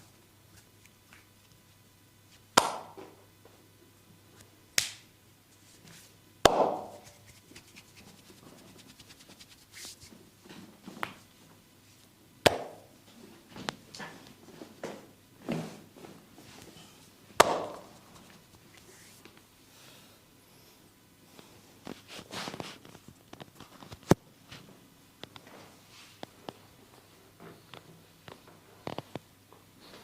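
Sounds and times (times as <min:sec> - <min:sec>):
hands slapping skin: 0:02.6 - 0:03.0, 0:04.8 - 0:05.0, 0:12.4 - 0:12.8, 0:17.4 - 0:17.9.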